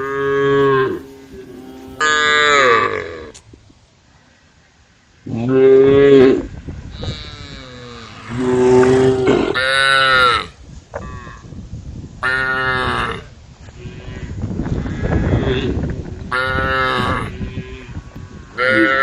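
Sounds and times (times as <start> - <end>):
cows mooing: 0.0 - 3.4, 5.3 - 11.3, 16.4 - 19.0.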